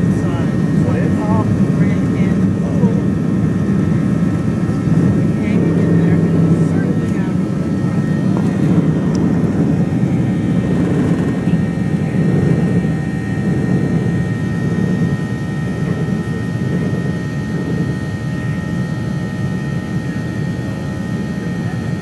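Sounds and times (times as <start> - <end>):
jet engines droning: 0.0 - 22.0
thin steady whine: 0.0 - 22.0.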